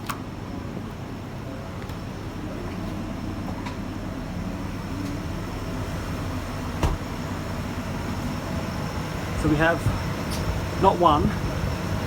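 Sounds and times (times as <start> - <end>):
refrigerator machinery humming: 0.0 - 12.0.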